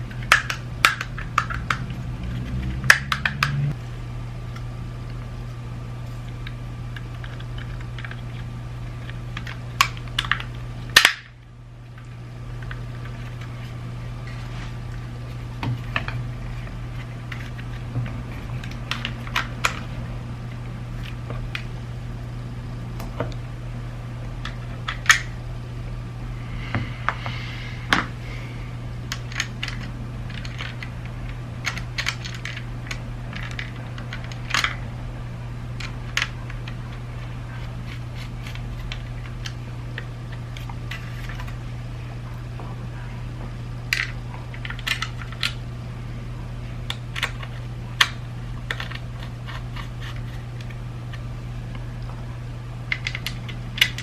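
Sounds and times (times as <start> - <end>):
steady low hum: 0.0 - 54.0
small plastic parts clicking: 29.1 - 34.8, 46.9 - 49.9.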